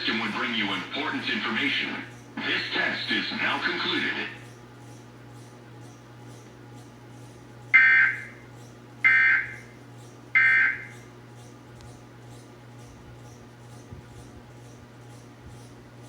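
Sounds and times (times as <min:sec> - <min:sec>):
buzzy digital squawks: 0:07.7 - 0:08.4, 0:09.0 - 0:09.7, 0:10.4 - 0:11.1.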